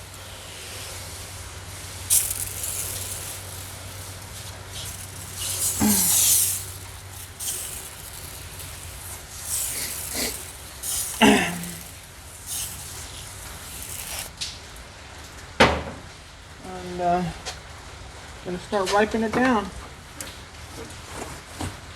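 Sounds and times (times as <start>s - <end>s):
spray bottle hissing bursts: 0.0s - 14.3s.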